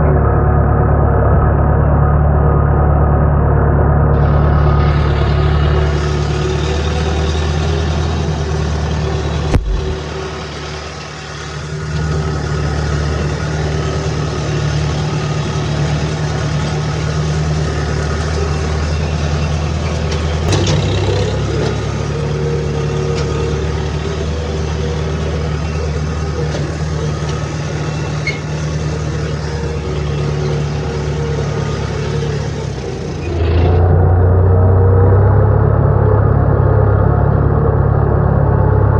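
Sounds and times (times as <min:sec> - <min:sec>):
vehicle engine idling: 0:04.1 - 0:34.8
sharp knock: 0:09.6 - 0:10.0.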